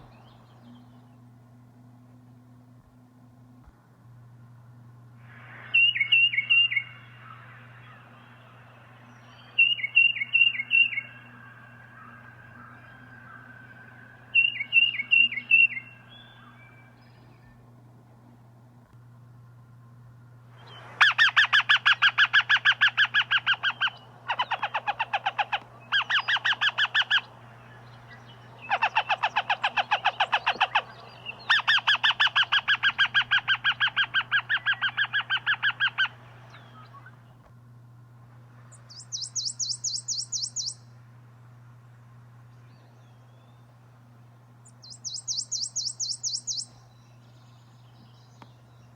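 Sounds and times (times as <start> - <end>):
bird rattling trills: 21.0 - 36.2, 38.8 - 40.8, 44.7 - 46.8
higher-pitched bird trill: 38.8 - 40.8, 44.7 - 46.9.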